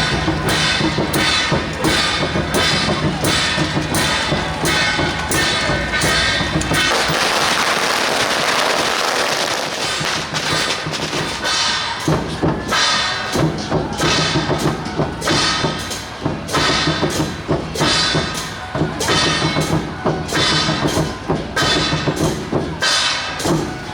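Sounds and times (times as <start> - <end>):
dense crashing noise: 0.0 - 11.4
drum gongs and cymbals: 0.0 - 23.9.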